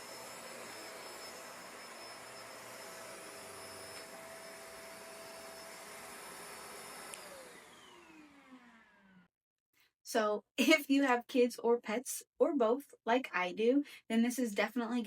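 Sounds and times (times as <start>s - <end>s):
motor spinning down: 0.0s - 9.3s
upright vacuum running with whine: 0.0s - 9.3s.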